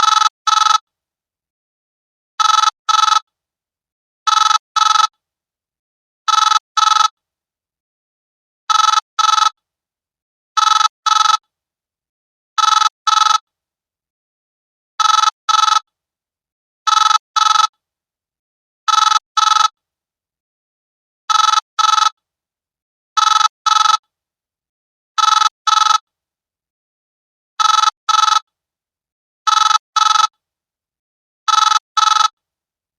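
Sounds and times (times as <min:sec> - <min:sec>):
phone ringtone beeps: 0:00.0 - 0:00.8, 0:02.4 - 0:03.3, 0:04.3 - 0:05.1, 0:06.3 - 0:07.2, 0:08.7 - 0:09.6, 0:10.6 - 0:11.4, 0:12.6 - 0:13.4, 0:15.0 - 0:15.9, 0:16.9 - 0:17.7, 0:18.9 - 0:19.8, 0:21.3 - 0:22.2, 0:23.2 - 0:24.0, 0:25.2 - 0:26.1, 0:27.6 - 0:28.5, 0:29.5 - 0:30.4, 0:31.5 - 0:32.4.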